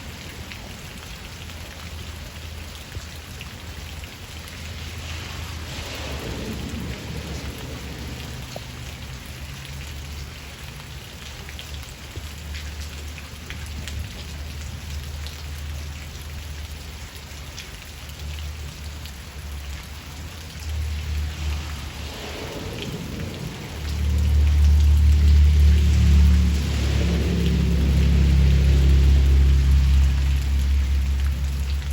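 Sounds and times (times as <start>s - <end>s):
rain pattering: 0.0s - 31.9s
thunder rumbling: 4.7s - 9.5s, 20.5s - 31.9s.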